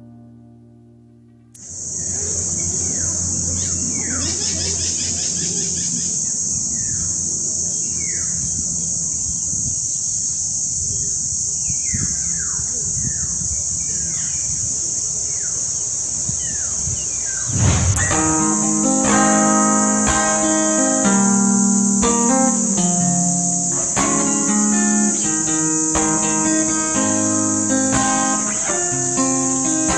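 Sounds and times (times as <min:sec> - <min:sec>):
high-pitched insect drone: 0:01.6 - 0:29.9
low hum: 0:17.4 - 0:18.6.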